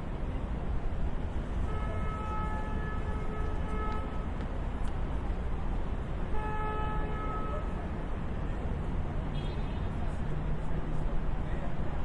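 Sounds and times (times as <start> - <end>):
rumble of passing vehicles: 0.0 - 12.0
vehicle horn: 1.6 - 4.2, 6.3 - 7.7.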